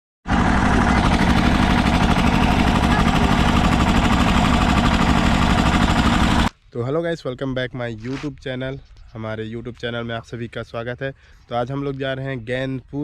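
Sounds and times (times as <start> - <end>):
loud engine idling: 0.3 - 6.5.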